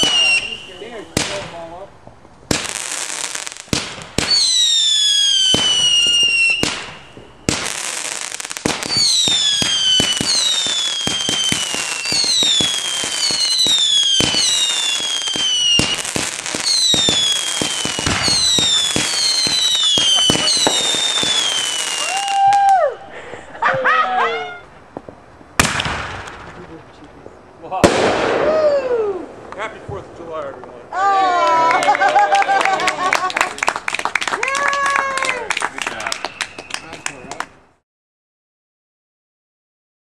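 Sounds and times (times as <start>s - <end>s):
firework whistles falling in pitch: 0.0s - 0.8s, 4.2s - 7.6s, 8.9s - 22.8s
firework bangs and crackling: 0.0s - 22.8s, 24.9s - 30.8s.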